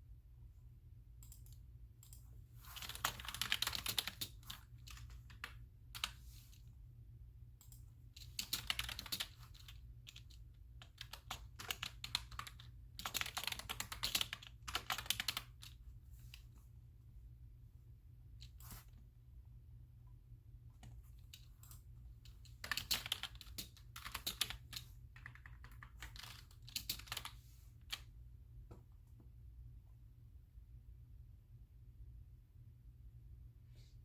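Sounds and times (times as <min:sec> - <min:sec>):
typing on computer keyboard: 0:01.2 - 0:06.2, 0:07.6 - 0:16.4, 0:20.8 - 0:28.1.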